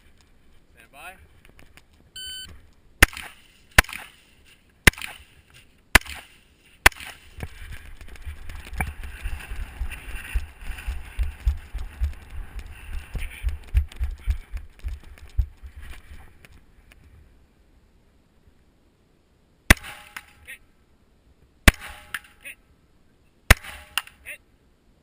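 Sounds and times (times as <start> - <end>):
shot timer beep: 2.2 - 2.5
rifle shots: 3.0 - 4.2, 4.8 - 5.3, 5.9 - 7.3, 19.7 - 20.4, 21.6 - 22.3, 23.5 - 24.1
low thumping and rustling: 7.2 - 16.6.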